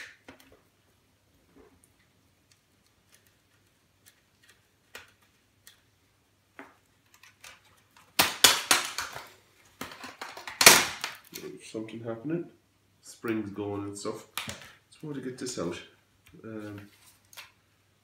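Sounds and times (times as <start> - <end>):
plastic case cracking and snapping: 7.1 - 11.4.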